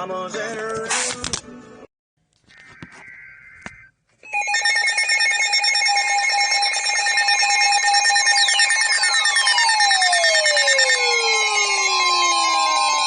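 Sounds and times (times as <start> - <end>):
falling tones: 4.3 - 13.0
two-tone attention signal: 4.3 - 13.0.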